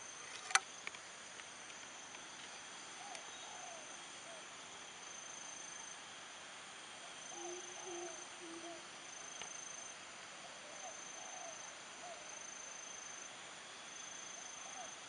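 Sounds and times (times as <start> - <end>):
crickets trilling: 0.0 - 15.0
faint low animal calls: 2.9 - 4.7, 7.0 - 9.3, 10.4 - 12.5, 14.2 - 15.0.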